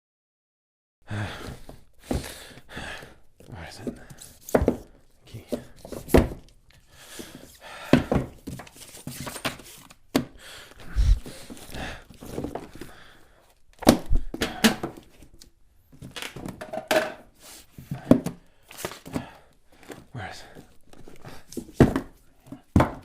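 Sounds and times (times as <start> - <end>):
knocks and thuds of objects: 5.6 - 6.4, 7.8 - 8.7, 13.8 - 15.1, 17.8 - 18.4, 21.6 - 23.0
rustling and crinkling: 8.3 - 10.1, 10.7 - 14.3, 17.6 - 23.0.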